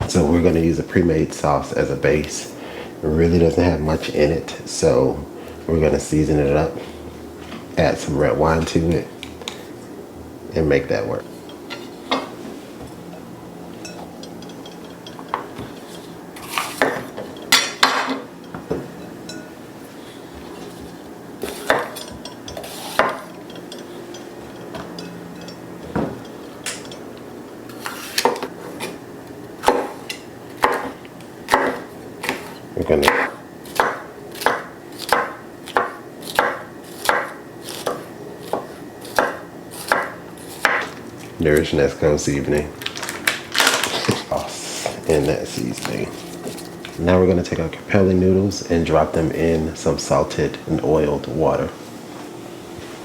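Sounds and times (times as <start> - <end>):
utensils and dishes clinking: 11.3 - 29.0
knife chopping on cutting board: 21.4 - 22.0, 30.6 - 41.0.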